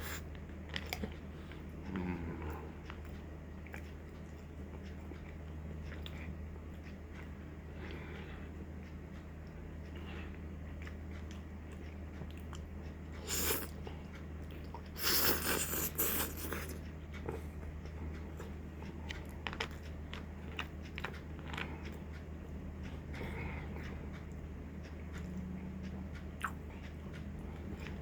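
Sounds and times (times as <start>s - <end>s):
person chewing: 0.0s - 9.2s, 9.8s - 28.0s
low electrical hum: 0.0s - 28.0s
small mouth clicks: 13.2s - 13.8s.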